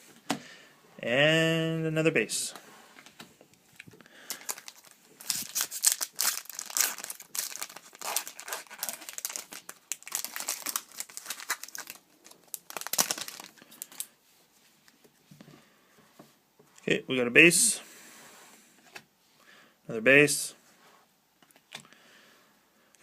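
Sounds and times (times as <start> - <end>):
card pack wrapper crinkling: 3.8 - 14.1.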